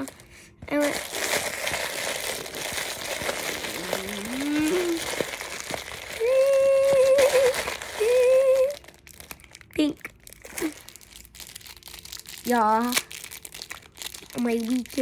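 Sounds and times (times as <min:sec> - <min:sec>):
toy wrapper crinkling: 0:00.0 - 0:15.0
person humming: 0:03.6 - 0:05.2, 0:06.2 - 0:08.8.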